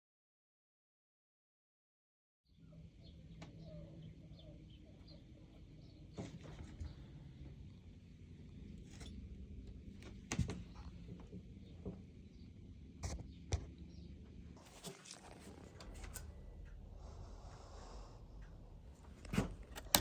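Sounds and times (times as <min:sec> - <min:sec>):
low steady hum: 0:02.6 - 0:20.0
sharp knocks and clicks: 0:19.2 - 0:20.0.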